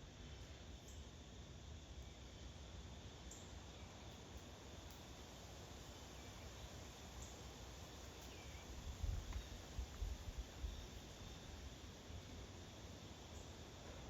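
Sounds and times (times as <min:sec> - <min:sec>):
insect drone: 0:00.0 - 0:14.0.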